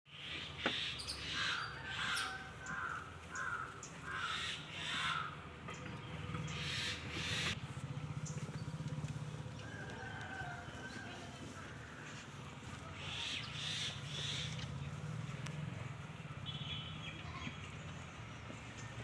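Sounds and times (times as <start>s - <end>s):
crows cawing: 0.7s - 5.4s.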